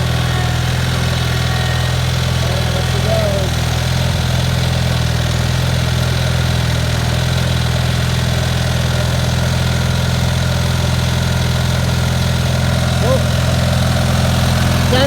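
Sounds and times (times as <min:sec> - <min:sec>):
tractor engine idling: 0:00.0 - 0:15.0.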